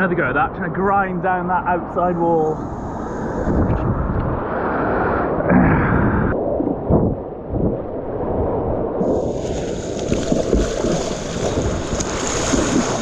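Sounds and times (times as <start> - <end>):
wind buffeting microphone: 2.4 - 13.0
rushing white water: 9.1 - 13.0.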